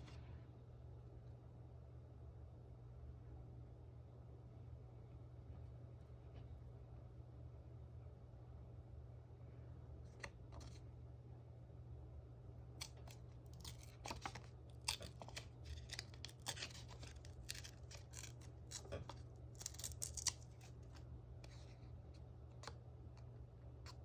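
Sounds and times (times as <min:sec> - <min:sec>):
steady low hum: 0:00.0 - 0:24.0
paper snipping and crackling: 0:12.8 - 0:21.8.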